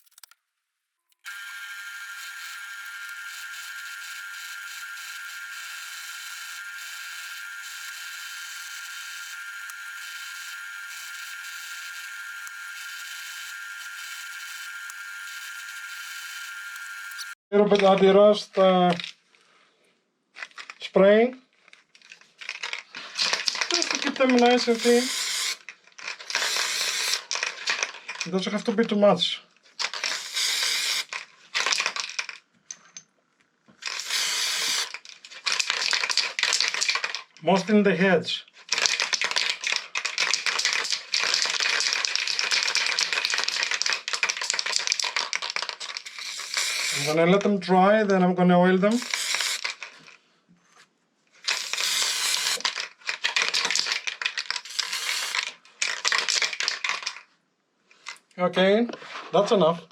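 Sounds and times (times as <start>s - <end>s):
aerosol spray bursts: 30.1s - 31.1s, 33.9s - 34.9s, 46.1s - 47.2s, 49.0s - 49.7s.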